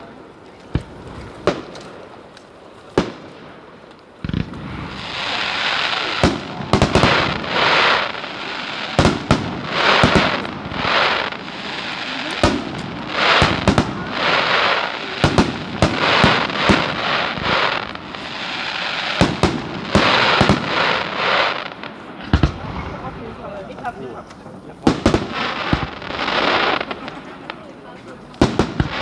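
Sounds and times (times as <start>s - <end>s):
crackling hiss of fireworks: 0.0s - 29.0s
fireworks bangs: 0.6s - 29.0s.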